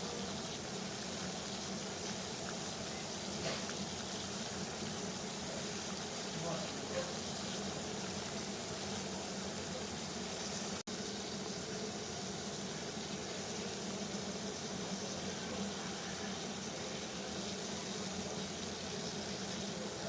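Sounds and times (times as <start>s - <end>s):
water boiling: 0.0s - 20.0s.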